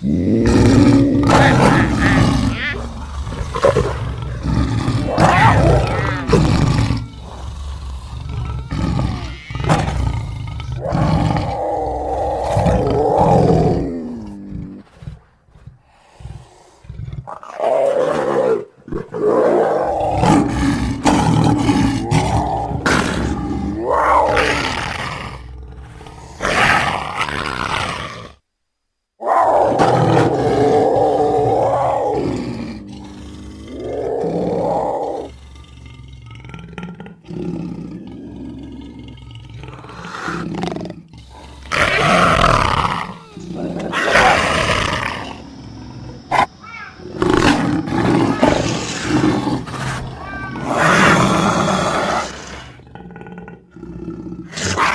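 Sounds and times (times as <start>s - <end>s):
big cat roaring and snarling: 0.0s - 28.4s, 29.2s - 54.9s.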